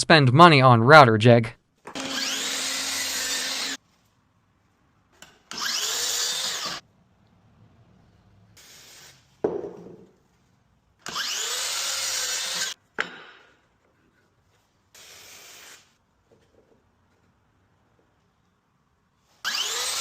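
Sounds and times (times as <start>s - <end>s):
power tool cutting wood: 1.9s - 3.8s, 5.5s - 6.8s, 11.0s - 12.8s, 19.4s - 20.0s.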